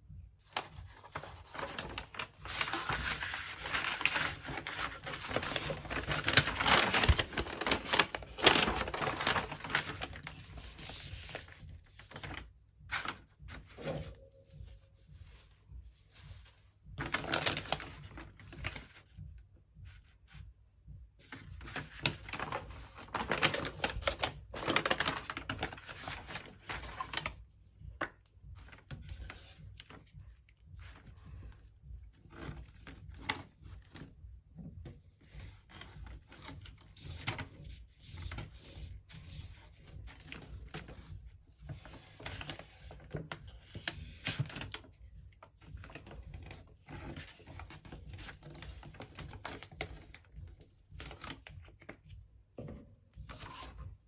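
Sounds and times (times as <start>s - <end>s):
paper rustling and scraping: 0.4s - 15.5s, 16.1s - 18.9s, 21.2s - 27.4s, 35.2s - 52.0s, 52.6s - 54.0s.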